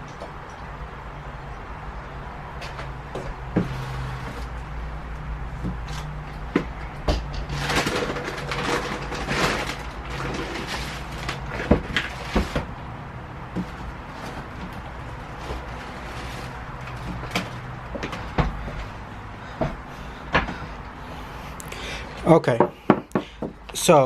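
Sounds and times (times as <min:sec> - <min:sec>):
tools rattling and knocking: 0:05.6 - 0:12.8.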